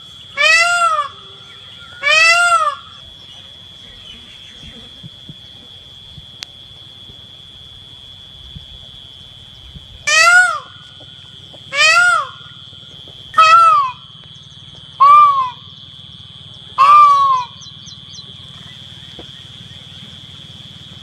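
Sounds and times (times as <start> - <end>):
peacock calling: 0.0 - 5.0, 10.0 - 12.7, 13.3 - 20.2.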